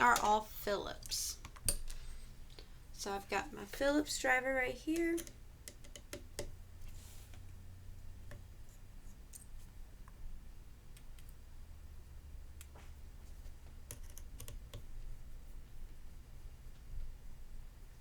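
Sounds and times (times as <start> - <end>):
low steady hum: 0.0 - 18.0
small screwdriver clicks and taps: 5.2 - 6.5.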